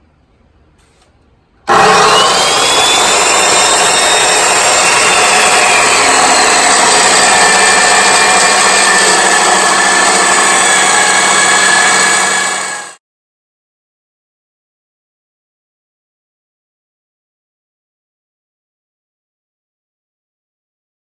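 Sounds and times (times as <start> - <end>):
power tool running with high whine: 1.7 - 13.0.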